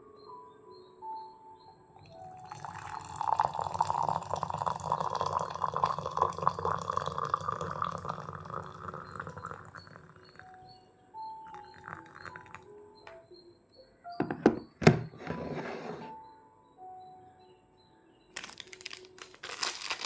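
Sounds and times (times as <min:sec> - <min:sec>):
liquid pouring into a cup: 0:02.0 - 0:10.7, 0:11.4 - 0:12.7.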